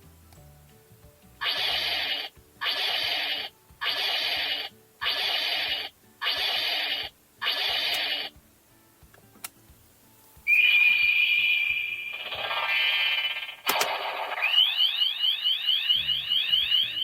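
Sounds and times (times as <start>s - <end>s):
toy belt hissing pulses: 1.4s - 8.3s, 10.5s - 15.9s.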